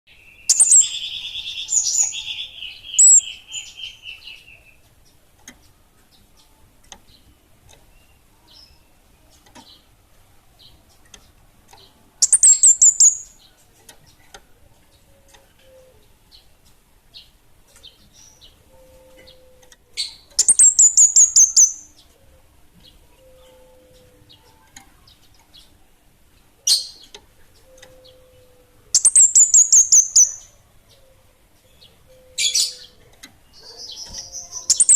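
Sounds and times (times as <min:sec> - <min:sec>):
songbird trilling: 0:00.1 - 0:04.8, 0:12.2 - 0:13.5, 0:19.2 - 0:22.1, 0:28.9 - 0:34.9
faint bird chirps: 0:00.1 - 0:05.0, 0:10.6 - 0:14.3, 0:17.1 - 0:25.8, 0:26.6 - 0:34.9.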